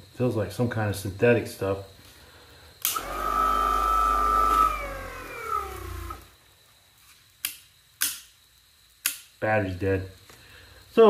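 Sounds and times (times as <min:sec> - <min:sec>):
polisher switch click: 0:02.8 - 0:03.2
polisher motor whining: 0:02.9 - 0:06.4.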